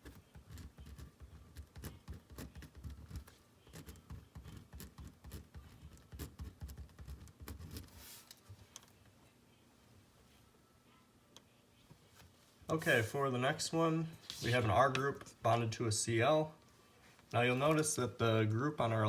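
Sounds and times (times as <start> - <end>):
pen scratching on paper: 0.0 - 8.2.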